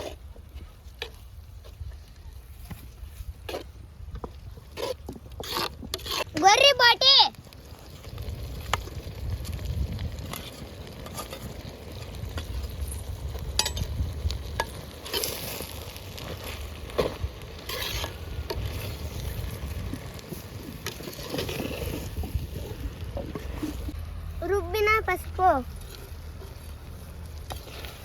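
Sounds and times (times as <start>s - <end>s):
food sizzling in pot: 5.6s - 22.8s.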